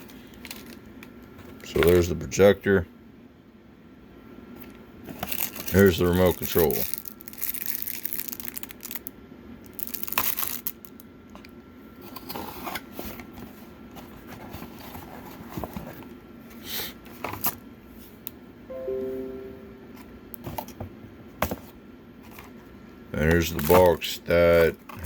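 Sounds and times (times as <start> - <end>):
plastic wrapping crinkling: 5.1 - 9.1, 9.7 - 11.0.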